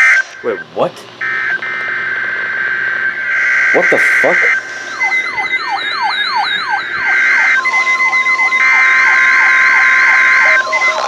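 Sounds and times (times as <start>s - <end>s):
electronic siren-like alarm: 0.0s - 11.0s
harsh digital data screech: 0.0s - 11.0s
steady alert beep tone: 3.2s - 11.0s.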